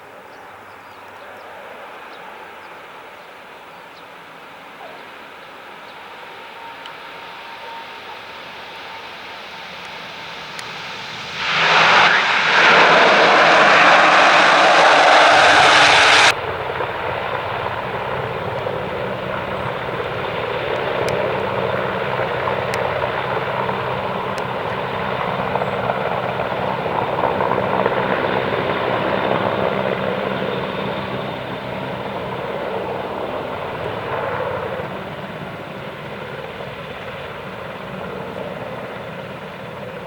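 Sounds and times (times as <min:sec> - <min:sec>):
aircraft engines droning: 0:00.0 - 0:40.0
bright rushing noise: 0:09.8 - 0:16.4.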